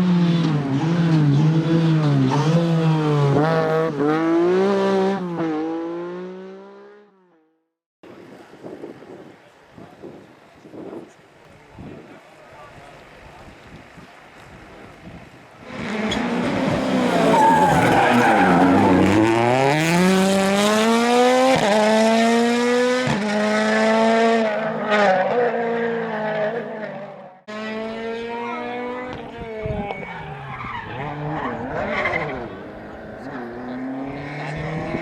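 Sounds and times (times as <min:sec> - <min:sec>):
rally car engine revving: 0:00.0 - 0:07.1, 0:15.6 - 0:35.0
tyre noise: 0:11.5 - 0:21.0.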